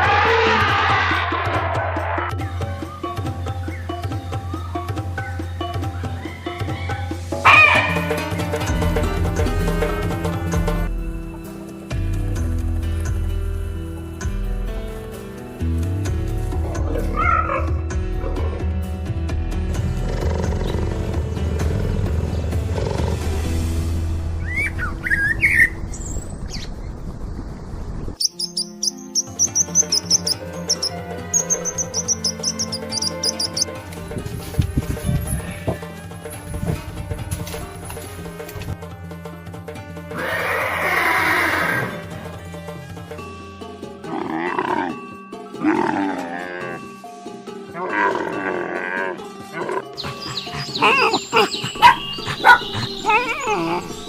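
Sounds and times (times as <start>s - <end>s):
background music: 0.0s - 25.9s, 28.2s - 54.0s
bird-like chirps and whistles: 24.4s - 26.9s, 28.2s - 33.7s, 50.0s - 54.0s
drawn-out wavering animal calls: 28.2s - 33.8s, 47.8s - 54.0s
fast high chirps: 28.2s - 33.8s, 50.0s - 54.0s.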